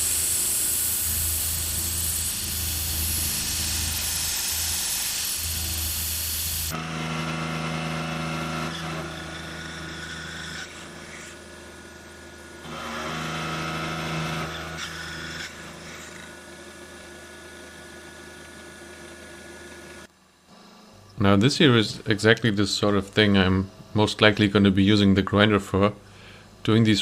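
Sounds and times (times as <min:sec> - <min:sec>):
milling machine cutting metal: 0:00.0 - 0:11.3.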